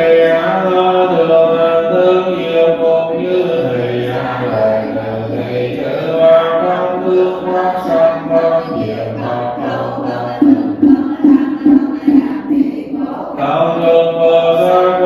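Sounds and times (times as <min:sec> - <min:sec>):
voices chanting: 0:00.5 - 0:15.0
even percussion beats: 0:08.8 - 0:13.9.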